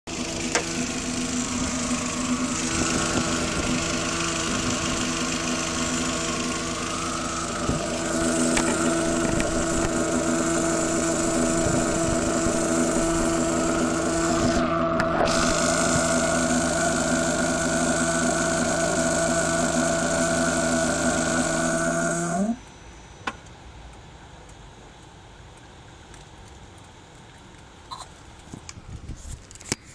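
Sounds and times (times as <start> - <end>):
car engine running: 0.0 - 23.1
steady tonal hum: 0.1 - 24.2.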